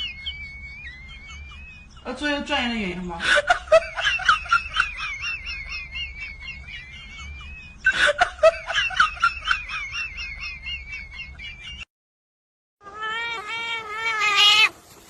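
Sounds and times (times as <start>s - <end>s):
squeaky giggling: 0.0s - 2.2s, 3.2s - 11.8s.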